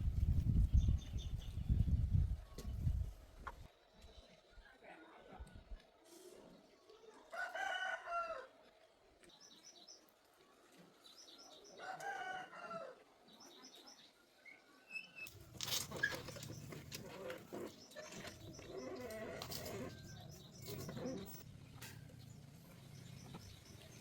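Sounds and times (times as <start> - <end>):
rooster crowing: 7.3 - 8.5, 11.8 - 13.0
small birds chirping: 13.3 - 21.4, 22.2 - 24.0
rustling and clatter: 15.3 - 22.4.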